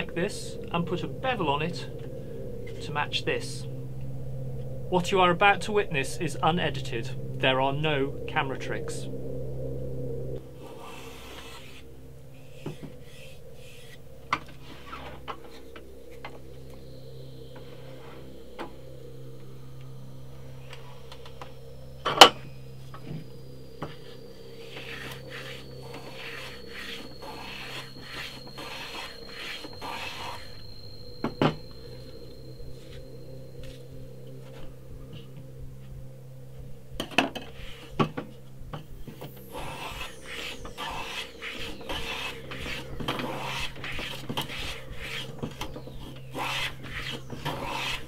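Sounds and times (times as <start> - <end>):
steady low hum: 0.0 - 48.0
hand plane shaving wood: 24.8 - 30.4, 39.6 - 45.6, 46.3 - 48.0.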